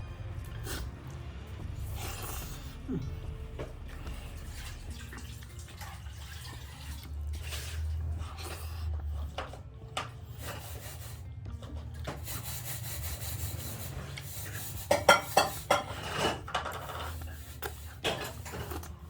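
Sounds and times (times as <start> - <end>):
steady low hum: 0.0 - 12.0
food being eaten: 0.1 - 10.8, 14.2 - 19.0.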